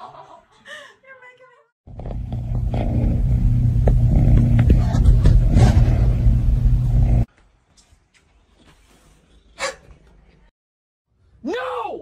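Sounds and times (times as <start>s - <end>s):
motor running with low rumble: 1.9s - 7.3s.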